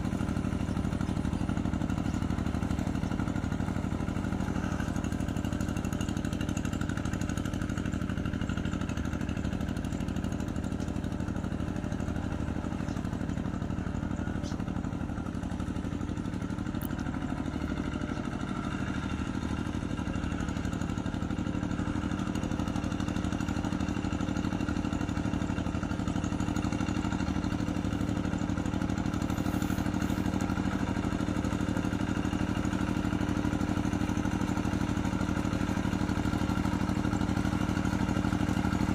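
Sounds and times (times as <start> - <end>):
hand tractor engine running: 0.0 - 38.9.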